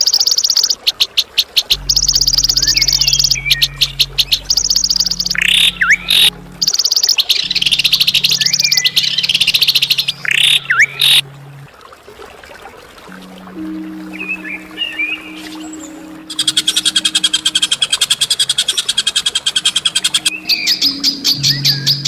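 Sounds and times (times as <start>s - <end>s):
songbird trilling: 0.0s - 11.2s
faint low tones: 1.7s - 12.1s, 13.0s - 18.8s, 19.8s - 22.0s.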